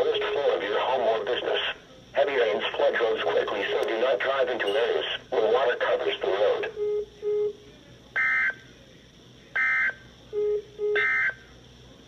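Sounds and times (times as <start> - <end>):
short low beeps: 9.6 - 11.4.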